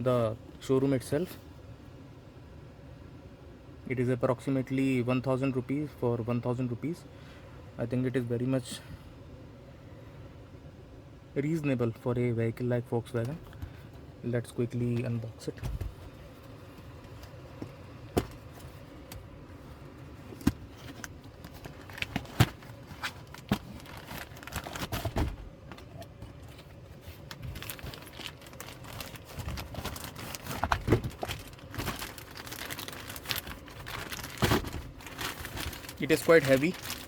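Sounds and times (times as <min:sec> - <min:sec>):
packaging crinkling and rustling: 0:19.8 - 0:37.0.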